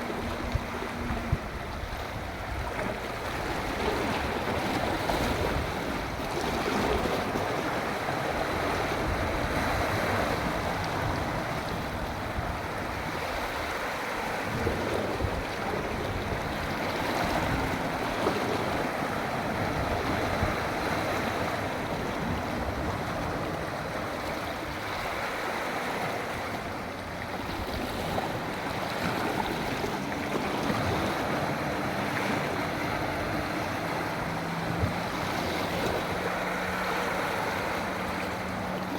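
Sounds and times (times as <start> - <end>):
low engine hum: 0.0 - 38.9
sea waves washing ashore: 0.0 - 38.9.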